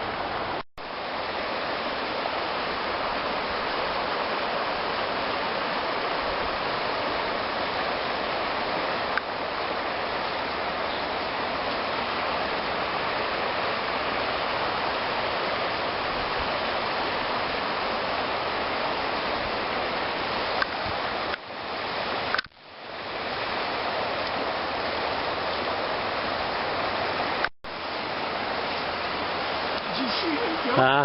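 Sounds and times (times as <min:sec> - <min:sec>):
fast-flowing creek: 0:00.0 - 0:31.0.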